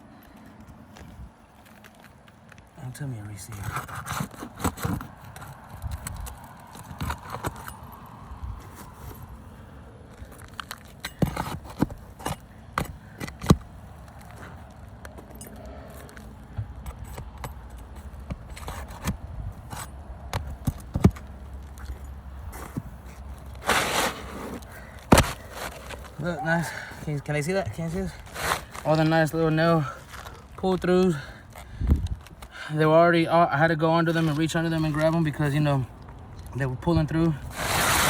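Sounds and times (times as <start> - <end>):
hand tools clicking and scraping: 0.1 - 9.3, 10.0 - 32.8, 34.0 - 38.0
long rasping scrape: 23.6 - 26.6, 37.5 - 38.0.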